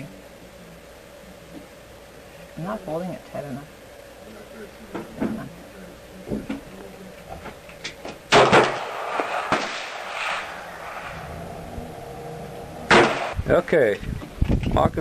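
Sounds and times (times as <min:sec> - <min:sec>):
pistol shots: 0:08.3 - 0:10.6, 0:12.9 - 0:13.4.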